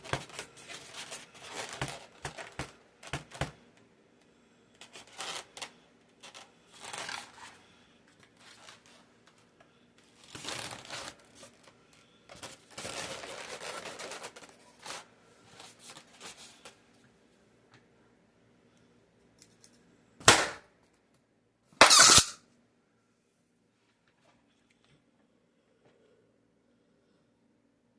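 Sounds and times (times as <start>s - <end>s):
balloons rubbing and crinkling: 0.0s - 3.4s, 4.8s - 9.2s, 10.1s - 16.7s
balloon pops: 20.2s - 20.6s, 21.8s - 22.4s.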